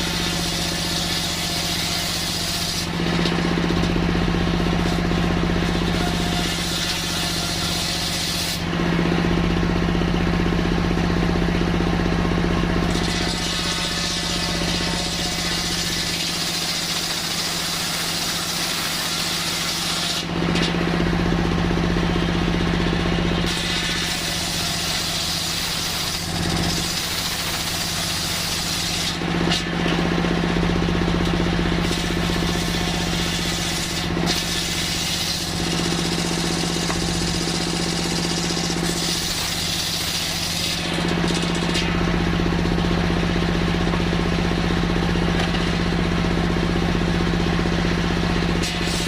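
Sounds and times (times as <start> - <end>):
saw blade rasping through wood: 0.0 - 8.8, 12.7 - 20.8, 23.2 - 30.0, 31.2 - 42.0, 48.5 - 49.0
sawmill humming: 0.0 - 49.0.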